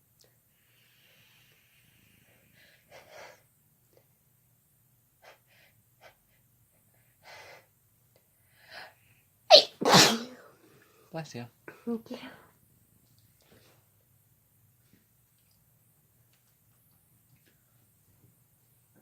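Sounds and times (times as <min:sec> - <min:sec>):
person sniffing before sneeze: 0:09.5 - 0:10.5.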